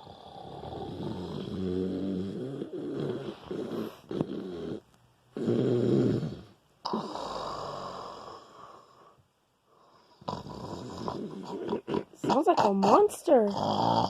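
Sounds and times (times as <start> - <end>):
man snoring loudly: 0.0 - 9.0, 10.2 - 12.4, 13.5 - 14.0
choking sound: 10.2 - 14.0.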